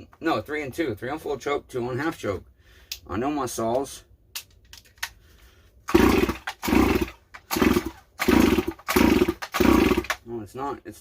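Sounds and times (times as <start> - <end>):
chainsaw starter cord yanks: 5.9 - 10.2.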